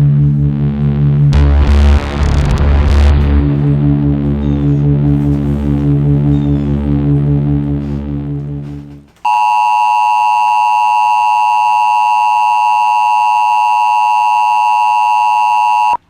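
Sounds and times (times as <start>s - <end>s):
two-tone electronic alert tone: 9.2s - 16.0s.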